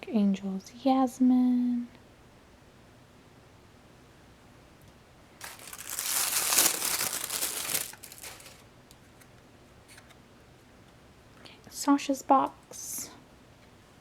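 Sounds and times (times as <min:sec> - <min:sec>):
packaging crinkling: 0:05.4 - 0:08.7.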